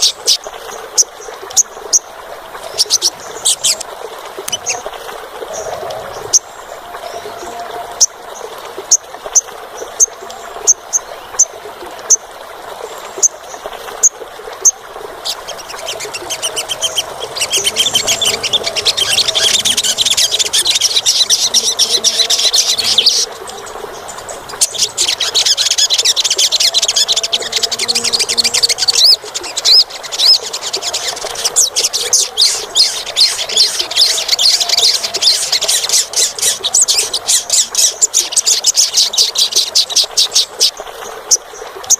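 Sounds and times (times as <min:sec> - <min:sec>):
bird twittering song: 0:00.0 - 0:12.2, 0:12.9 - 0:41.9
bird chirping: 0:14.6 - 0:40.7.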